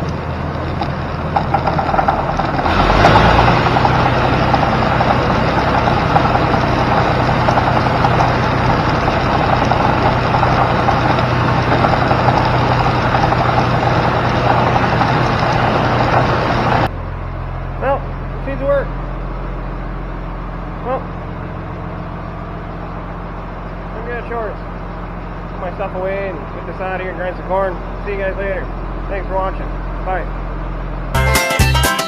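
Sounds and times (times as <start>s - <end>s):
grinder-mixer machine running: 0.0s - 16.9s.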